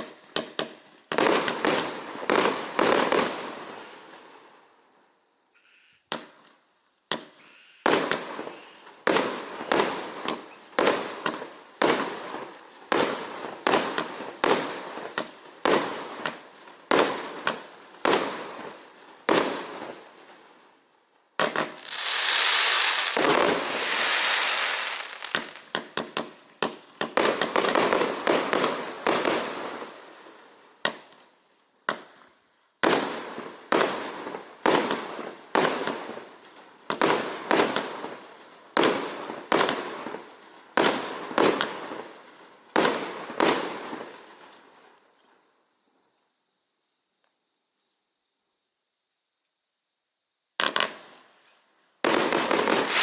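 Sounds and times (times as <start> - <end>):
fireworks cake firing: 21.4 - 29.9, 52.0 - 53.0.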